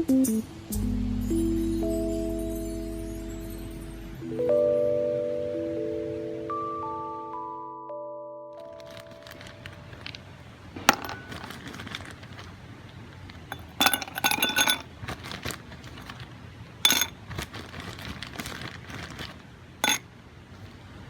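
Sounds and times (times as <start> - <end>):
camping gear clinking: 8.7 - 20.0.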